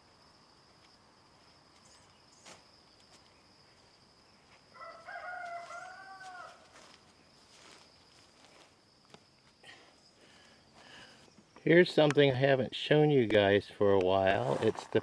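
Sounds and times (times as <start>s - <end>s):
high insect trill: 0.0s - 15.0s
rooster crowing: 4.7s - 6.9s.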